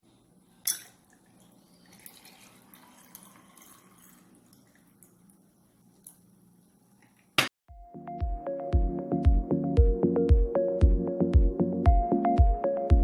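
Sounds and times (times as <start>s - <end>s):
liquid pouring and dripping: 0.7s - 6.3s.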